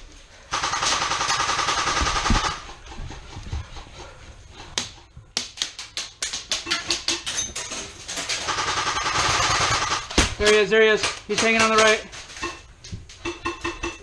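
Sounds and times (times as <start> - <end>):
airsoft rifle full-auto burst: 0.5 - 2.6, 8.5 - 10.1.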